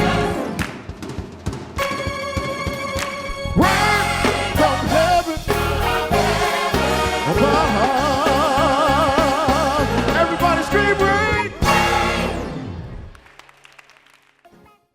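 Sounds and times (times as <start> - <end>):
gospel choir singing: 0.0 - 0.6, 3.6 - 12.6
band playing: 0.0 - 0.9, 1.8 - 13.2.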